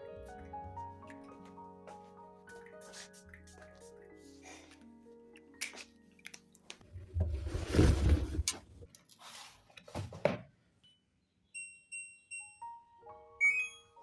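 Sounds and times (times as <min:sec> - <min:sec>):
background music: 0:00.0 - 0:07.1
chime-like music notes: 0:11.5 - 0:14.0.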